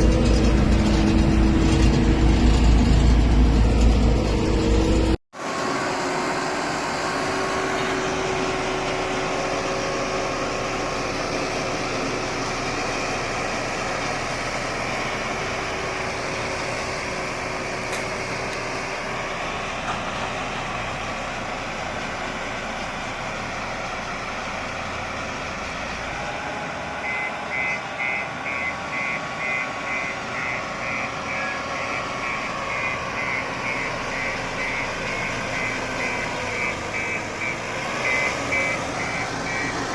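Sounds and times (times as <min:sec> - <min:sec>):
diesel engine running: 0:00.0 - 0:39.9
reversing alarm beeping: 0:26.2 - 0:39.9.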